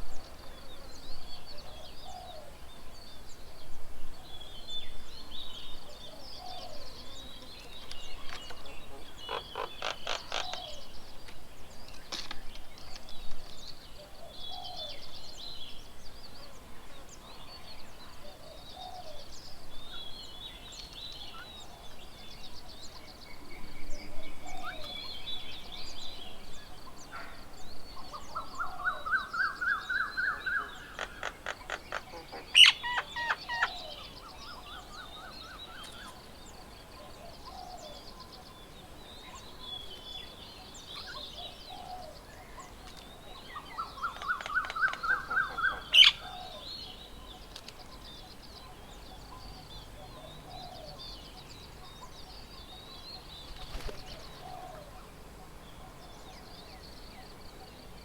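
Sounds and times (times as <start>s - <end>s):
bird chirps: 24.5s - 55.1s.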